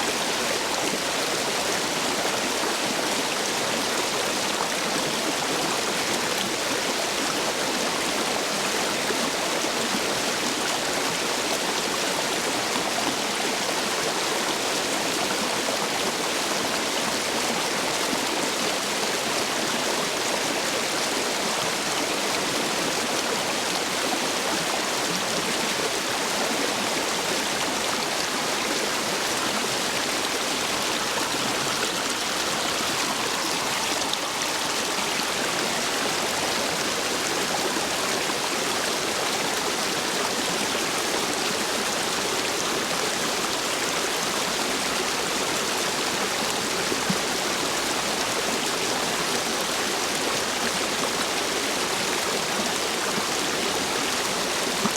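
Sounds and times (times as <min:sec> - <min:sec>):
stream water rushing: 0:00.0 - 0:54.9.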